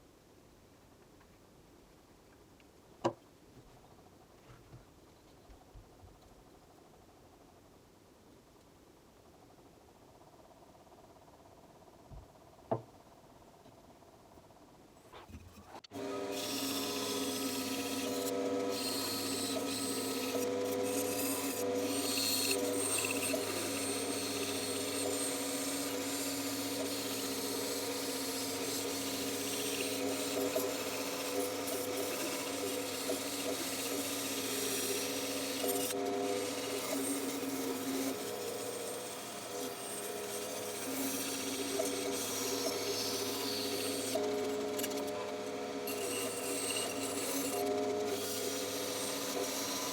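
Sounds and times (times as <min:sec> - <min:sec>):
bandsaw cutting wood: 0:15.7 - 0:49.9.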